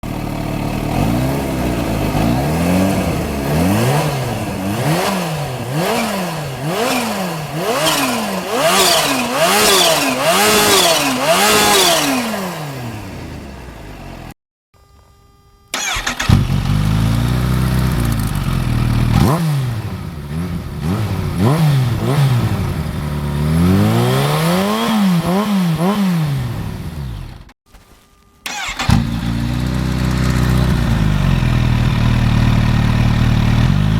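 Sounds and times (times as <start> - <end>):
motorcycle engine revving: 0.0 - 14.4, 15.8 - 27.5, 28.5 - 33.9.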